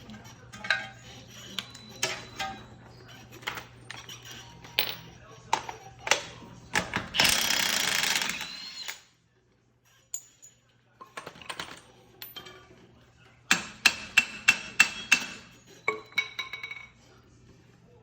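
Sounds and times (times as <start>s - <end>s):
hand tools clinking on metal: 0.1s - 2.8s
loud tool noise: 6.8s - 9.0s.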